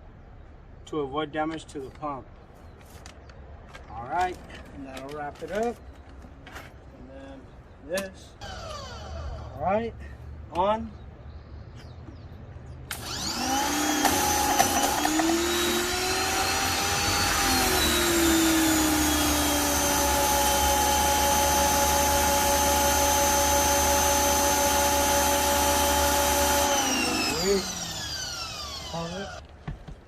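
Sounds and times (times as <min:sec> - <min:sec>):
pressure washer motor whining: 0:08.4 - 0:09.6, 0:12.9 - 0:29.5.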